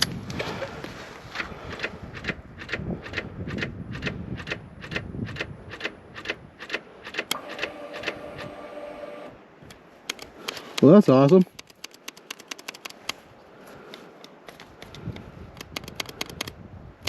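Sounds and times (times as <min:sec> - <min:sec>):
motorcycle starter clicking: 0:01.8 - 0:08.6.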